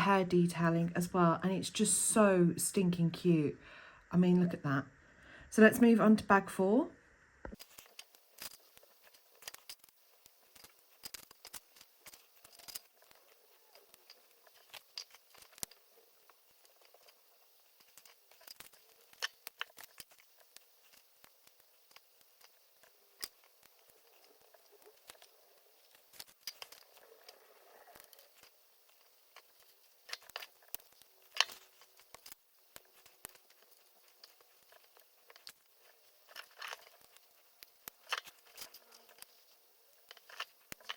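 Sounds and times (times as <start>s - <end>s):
plastic bricks clicking: 28.0s - 35.6s.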